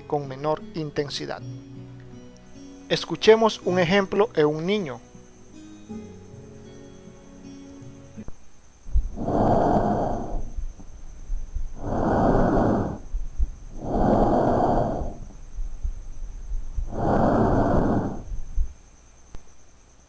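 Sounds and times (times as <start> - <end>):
child's breath sounds: 9.1 - 10.6, 11.8 - 15.4, 16.9 - 18.4.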